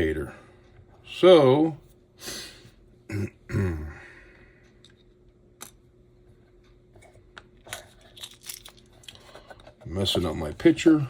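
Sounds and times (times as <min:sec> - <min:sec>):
man clearing his throat: 0:03.1 - 0:04.1.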